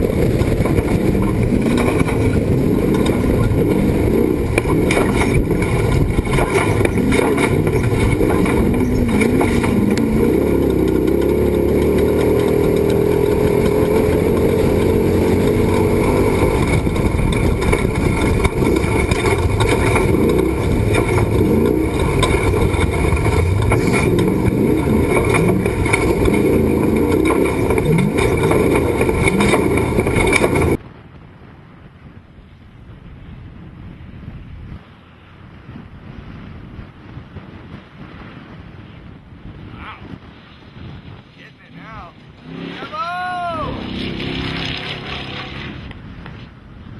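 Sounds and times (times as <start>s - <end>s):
truck engine revving: 0.0s - 30.8s, 41.6s - 46.1s.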